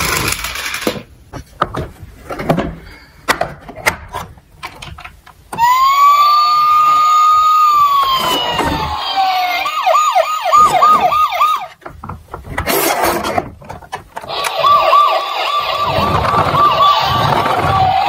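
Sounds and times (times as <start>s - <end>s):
toy siren wailing and yelping: 5.6s - 11.8s, 14.3s - 18.0s.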